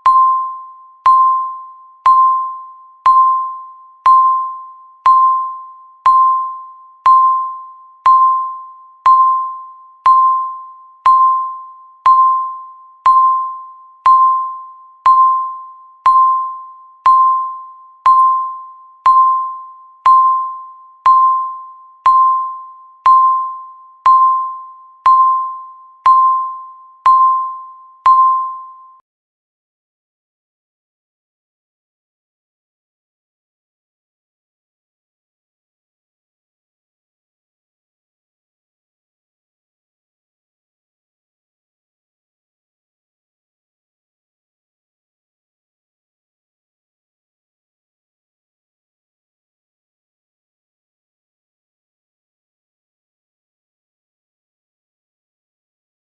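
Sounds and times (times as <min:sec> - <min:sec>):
timer beeping: 0:00.0 - 0:29.0.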